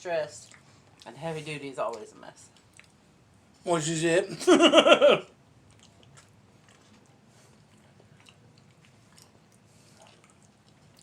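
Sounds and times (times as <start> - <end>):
faint chewing: 0.2 - 3.1, 5.6 - 11.0.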